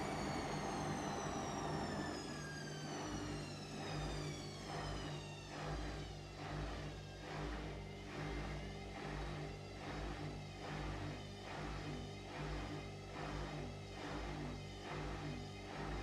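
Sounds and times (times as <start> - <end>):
washing machine drum pulsing: 0.0 - 5.2
washing machine motor whine: 0.0 - 16.0.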